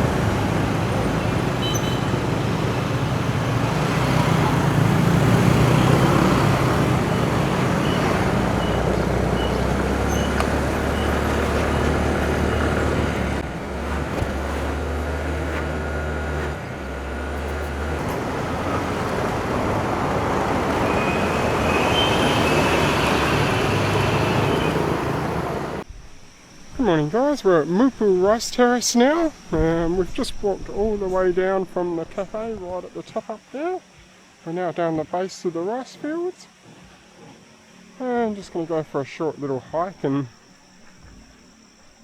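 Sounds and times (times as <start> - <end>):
low engine hum: 0.0 - 25.8
road traffic rumble: 0.0 - 25.8.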